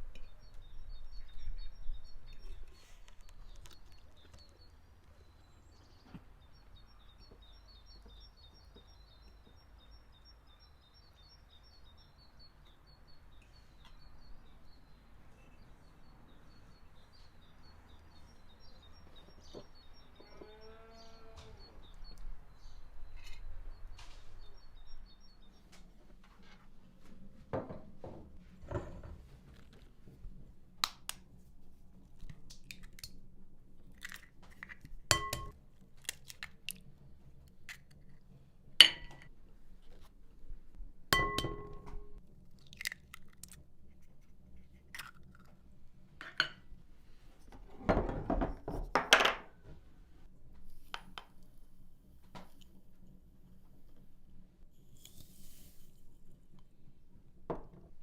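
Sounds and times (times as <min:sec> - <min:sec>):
small birds chirping: 0:00.0 - 0:26.0
outdoor background noise: 0:00.0 - 0:58.0.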